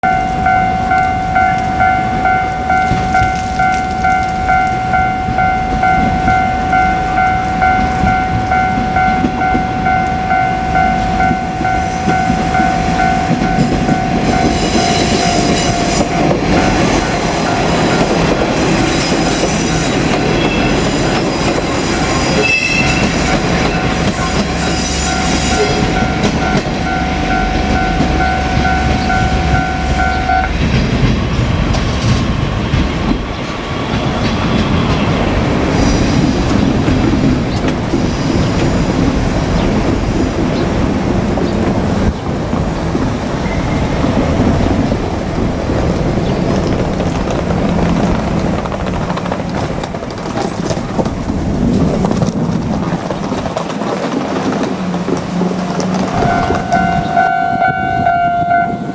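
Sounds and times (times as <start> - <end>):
level crossing warning bell: 0.0 - 31.1, 56.1 - 58.9
railcar wheels clattering: 0.0 - 58.9.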